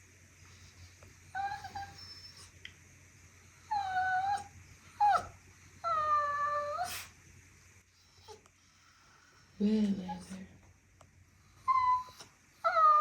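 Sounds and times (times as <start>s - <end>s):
dog whining: 1.3s - 2.6s, 3.7s - 7.1s, 8.0s - 8.4s, 11.4s - 13.0s.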